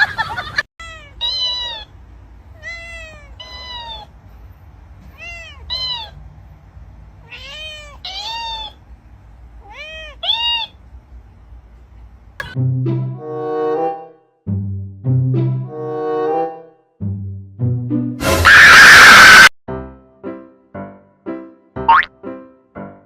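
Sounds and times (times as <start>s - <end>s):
cat meowing: 0.8s - 1.9s, 2.5s - 4.1s, 5.0s - 6.2s, 7.2s - 8.8s, 9.6s - 10.8s.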